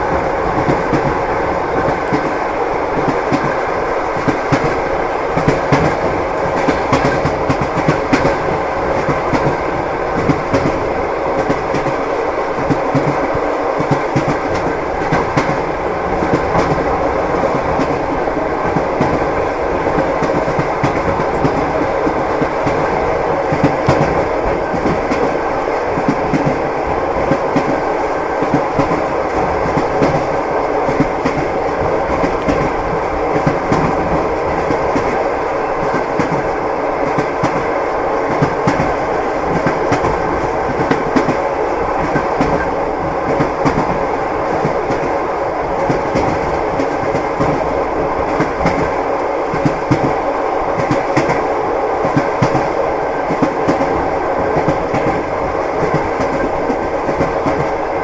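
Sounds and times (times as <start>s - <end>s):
train wheels clacking over rail joints: 3.0s - 9.6s.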